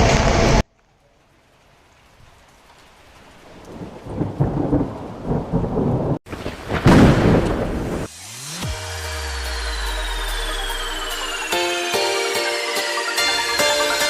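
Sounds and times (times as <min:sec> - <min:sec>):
rain: 0:00.0 - 0:11.6
rumbling thunder: 0:03.6 - 0:08.1
rising sweep: 0:07.9 - 0:14.0.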